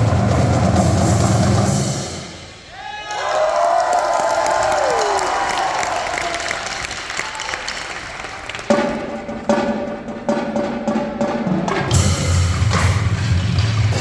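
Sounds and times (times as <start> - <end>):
marching percussion ensemble: 0.0 - 2.8, 7.6 - 14.0
crowd applause: 2.8 - 9.5.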